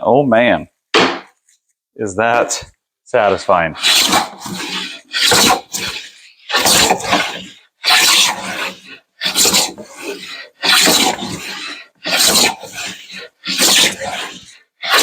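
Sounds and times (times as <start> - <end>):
hand plane rasping wood: 3.8 - 15.0.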